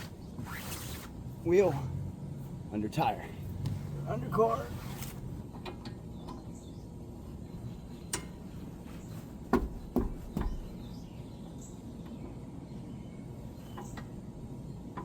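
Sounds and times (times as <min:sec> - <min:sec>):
outdoor background hum: 0:00.0 - 0:15.0
tools knocking: 0:09.5 - 0:10.8.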